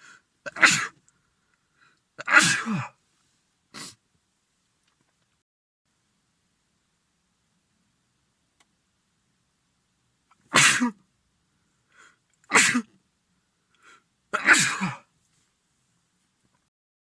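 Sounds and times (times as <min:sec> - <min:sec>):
man sneezing: 0:00.4 - 0:01.0, 0:02.2 - 0:03.0, 0:03.8 - 0:04.0, 0:10.5 - 0:11.0, 0:12.5 - 0:12.9, 0:14.3 - 0:15.1.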